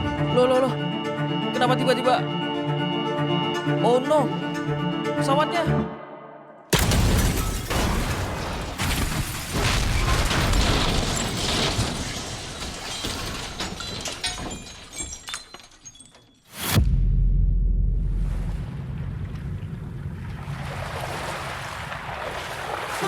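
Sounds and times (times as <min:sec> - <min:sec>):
breaking and shattering: 0:06.8 - 0:16.5
loud impact: 0:16.6 - 0:20.3
low rumble of waves: 0:17.2 - 0:23.0
wind: 0:17.9 - 0:23.0.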